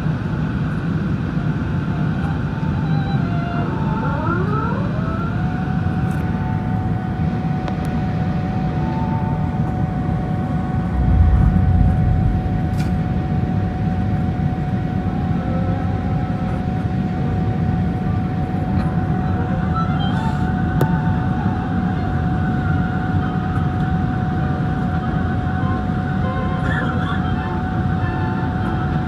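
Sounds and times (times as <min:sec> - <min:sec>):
jet engines whining: 0:01.1 - 0:26.1
deep thump: 0:10.8 - 0:13.8.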